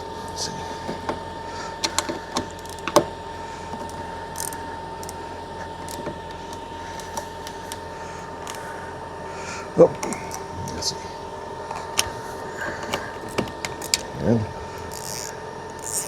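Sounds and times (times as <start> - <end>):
faint high hum: 0.0 - 16.0
socket ratchet and tools clicking: 4.4 - 4.6, 14.9 - 16.0.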